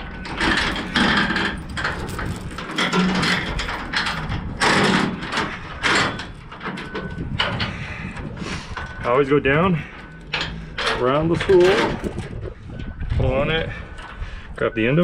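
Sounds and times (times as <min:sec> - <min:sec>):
chain clanking and rattling: 0:00.0 - 0:15.0
chain knocks: 0:00.1 - 0:07.7.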